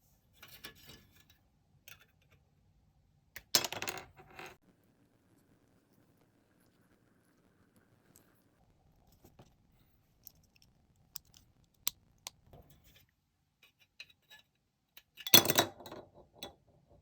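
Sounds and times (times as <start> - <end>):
plastic parts clicking and tapping: 10.2 - 12.4.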